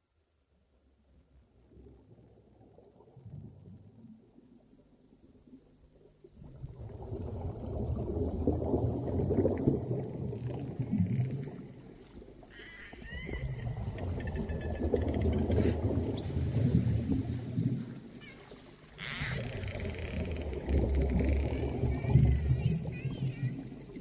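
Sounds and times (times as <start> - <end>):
short upward-sweeping whale calls: 12.5 - 17.0, 18.2 - 20.6.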